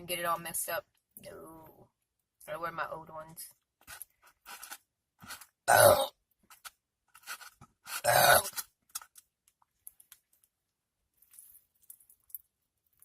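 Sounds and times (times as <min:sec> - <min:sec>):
person burping: 0:05.6 - 0:06.2, 0:08.0 - 0:08.6.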